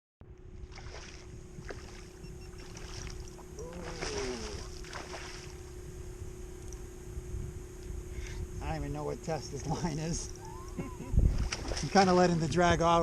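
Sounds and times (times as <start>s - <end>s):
faint steady hum: 0.2s - 13.0s
water against hull: 0.5s - 5.8s, 9.5s - 13.0s
wind on microphone: 0.5s - 8.9s, 10.3s - 13.0s.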